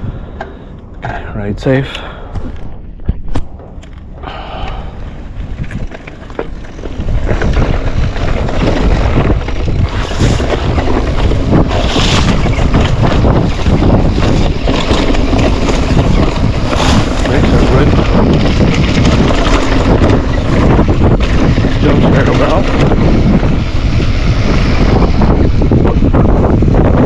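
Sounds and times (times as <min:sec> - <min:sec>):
wind rushing over microphone: 0:00.0 - 0:27.0
bike knocks and rattles: 0:05.4 - 0:27.0.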